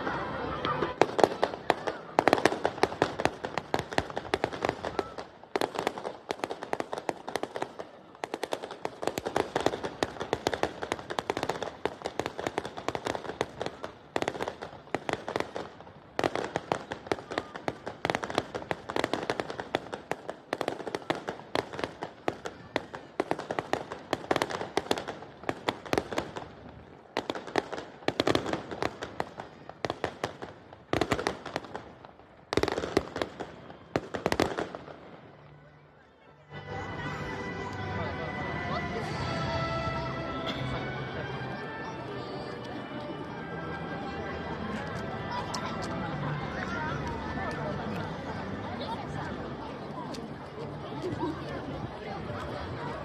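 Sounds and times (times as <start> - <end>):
fireworks crackling: 0.0 - 35.6.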